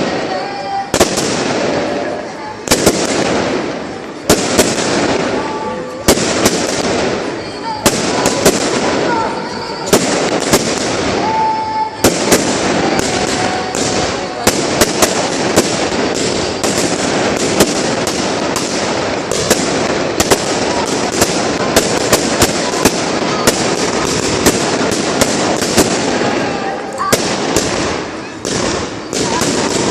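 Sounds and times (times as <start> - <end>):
din of fireworks bursts: 0.0 - 29.9
fireworks sharp bangs: 0.0 - 29.9.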